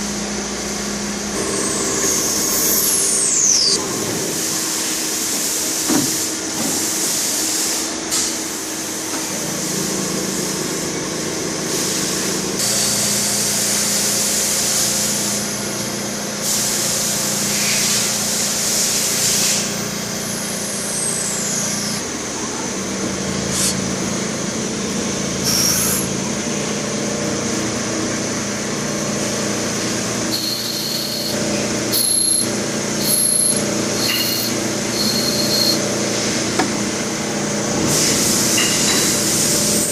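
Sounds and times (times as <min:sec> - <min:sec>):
lathe spindle hum: 0:19.7 - 0:39.9
short high tones: 0:33.2 - 0:35.8.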